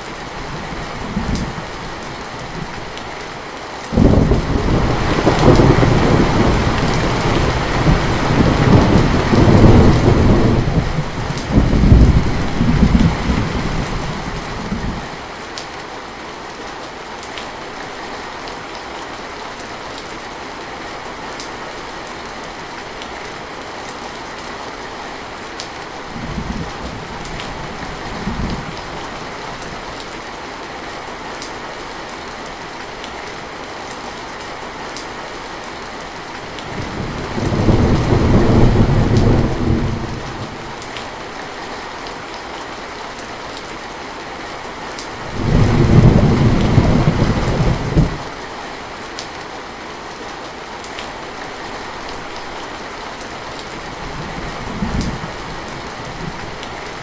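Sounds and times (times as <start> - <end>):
heavy rain: 0.0 - 57.0
thunder rumbling: 4.0 - 15.1, 36.7 - 40.8, 45.2 - 48.3.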